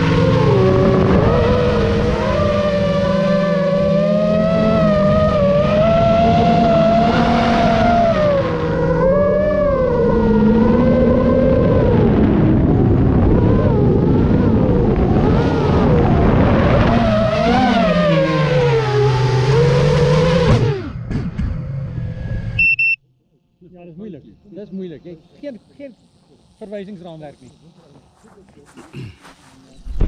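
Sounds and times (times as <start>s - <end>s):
gyrocopter motor running: 0.0s - 22.3s, 23.6s - 30.0s.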